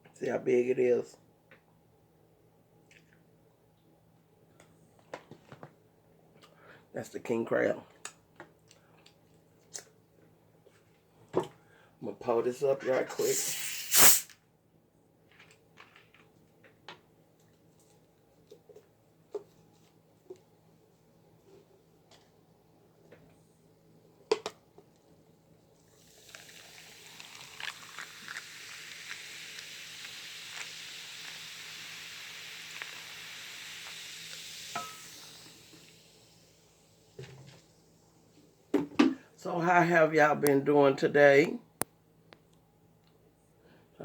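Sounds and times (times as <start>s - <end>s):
soda fizzing in a cup: 13.1s - 14.3s, 25.8s - 37.7s.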